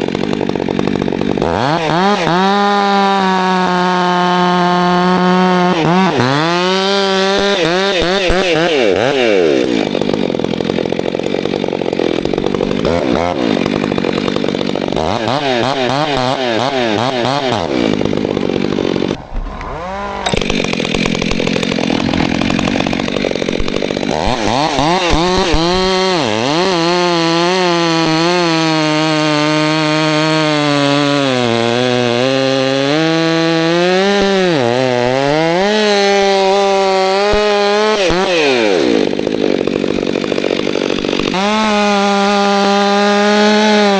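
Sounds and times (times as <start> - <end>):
chainsaw engine revving: 0.0 - 43.9.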